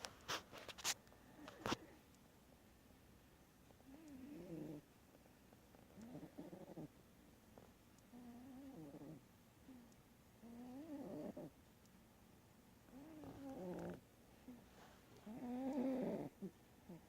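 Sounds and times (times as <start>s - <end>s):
animal snoring: 3.8s - 4.8s, 5.7s - 6.9s, 8.1s - 11.5s, 12.9s - 14.6s, 15.2s - 17.0s.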